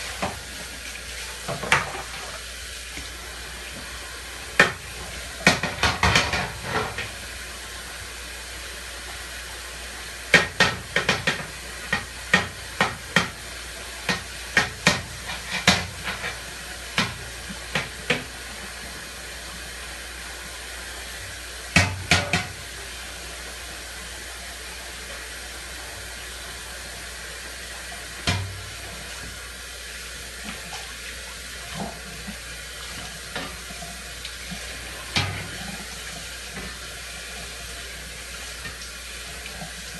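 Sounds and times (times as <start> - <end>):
running tap water: 0.0 - 39.9
dishes clinking in sink: 1.4 - 2.4, 5.4 - 7.2, 14.0 - 18.3, 21.8 - 22.6, 35.1 - 35.8.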